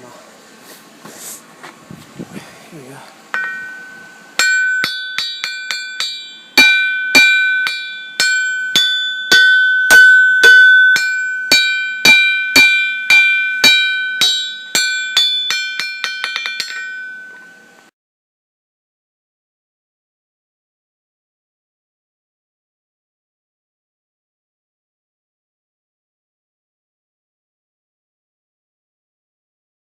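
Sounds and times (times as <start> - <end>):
hammer ringing on anvil: 3.3 - 17.9.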